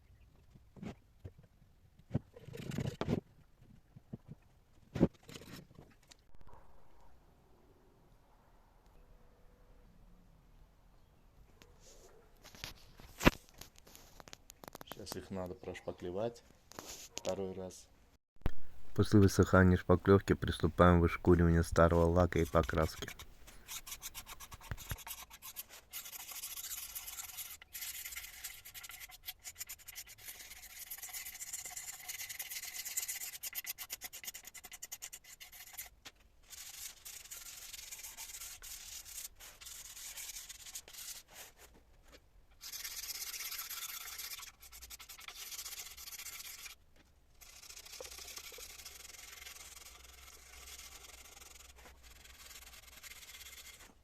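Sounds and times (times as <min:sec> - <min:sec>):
sandpaper rubbing on wood: 0:20.3 - 0:35.9, 0:36.5 - 0:41.6, 0:42.6 - 0:46.8, 0:47.4 - 0:53.9.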